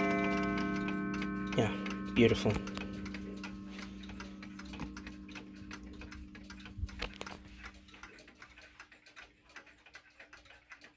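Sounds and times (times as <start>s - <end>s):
low ringing tone: 0.0s - 7.4s
mantel clock ticking: 0.0s - 10.9s.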